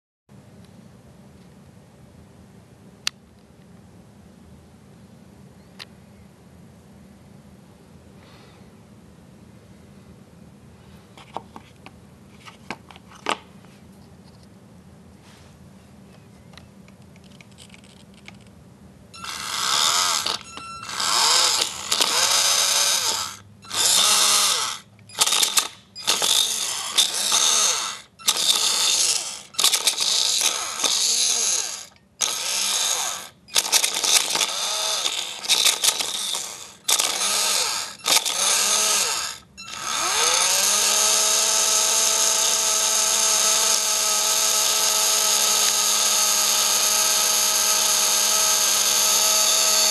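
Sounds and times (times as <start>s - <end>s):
electric motor whining: 19.2s - 49.9s.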